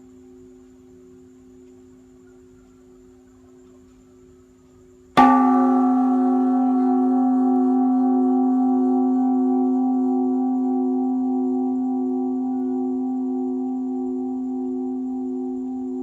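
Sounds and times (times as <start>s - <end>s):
large temple bell ringing: 5.2s - 16.0s.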